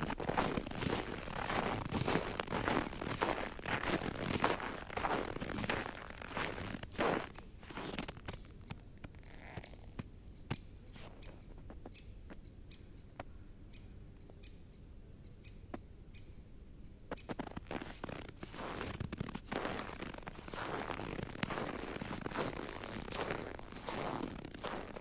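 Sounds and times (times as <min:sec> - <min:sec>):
snow squeaking chirps: 0:00.0 - 0:08.5, 0:09.1 - 0:10.0, 0:17.1 - 0:25.0
footsteps crunching in snow: 0:00.0 - 0:10.0, 0:10.9 - 0:11.9, 0:17.1 - 0:25.0.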